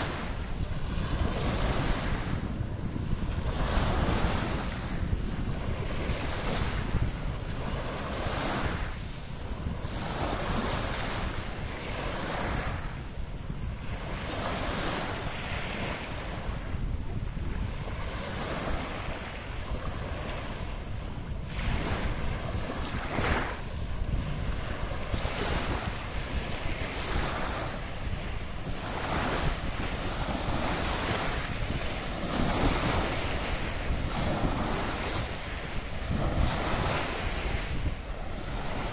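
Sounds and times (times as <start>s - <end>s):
wind buffeting microphone: 0.0s - 38.9s
sea water rushing: 17.4s - 38.9s.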